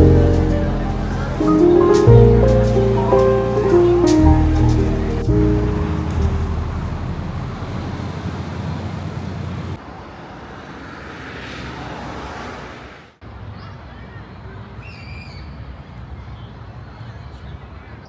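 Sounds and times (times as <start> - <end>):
heavy low traffic rumble: 0.0 - 9.8
traffic hiss: 0.0 - 13.4.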